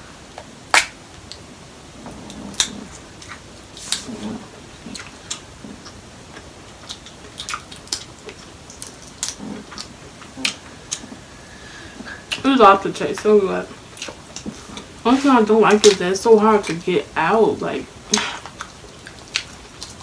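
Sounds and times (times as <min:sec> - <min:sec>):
soft chewing: 0:02.0 - 0:16.8, 0:18.1 - 0:20.0.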